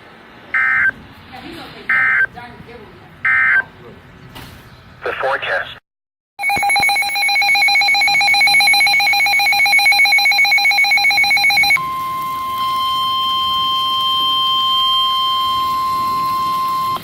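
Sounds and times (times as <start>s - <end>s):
fast pulsing electronic beep: 6.4s - 11.8s
steady warning alarm tone: 6.4s - 17.0s.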